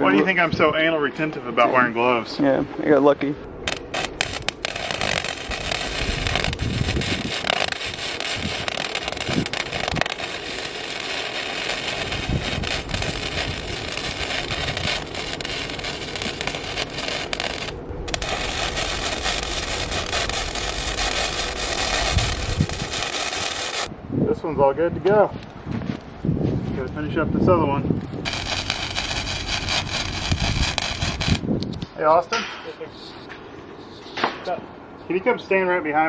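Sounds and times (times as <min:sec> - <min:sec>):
electric arc welding crackling: 0:03.6 - 0:23.9, 0:28.2 - 0:31.5.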